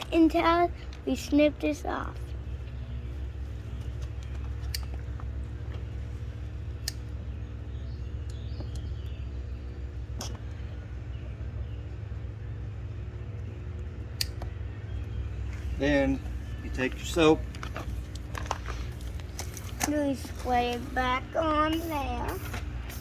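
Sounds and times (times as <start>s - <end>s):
motor humming: 0.0s - 23.0s
sharp clicks: 6.8s - 7.1s.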